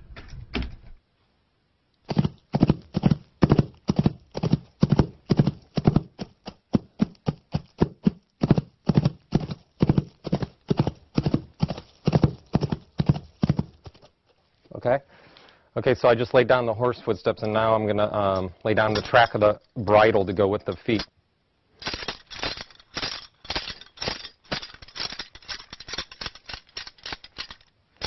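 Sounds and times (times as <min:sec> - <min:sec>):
horse hooves clip-clopping: 0:02.0 - 0:14.1, 0:21.8 - 0:27.7.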